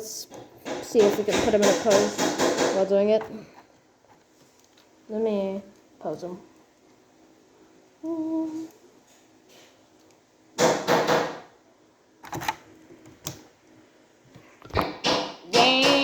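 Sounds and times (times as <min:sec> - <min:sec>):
person humming: 0:08.0 - 0:08.7, 0:15.5 - 0:16.0.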